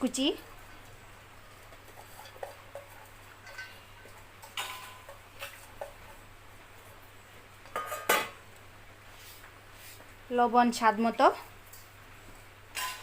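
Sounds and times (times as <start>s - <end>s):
clatter of kitchenware: 1.6s - 6.2s, 7.7s - 8.4s, 12.7s - 13.0s
bowls and spoon clinking: 1.7s - 6.2s.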